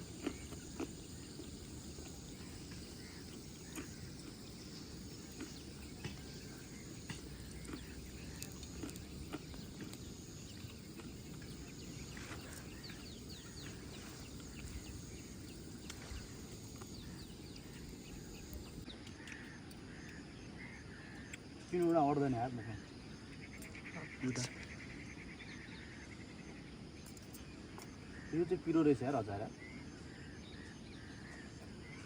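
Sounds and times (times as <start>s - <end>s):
steady low hiss: 0.0s - 19.0s
faint bird chirps: 0.0s - 32.0s.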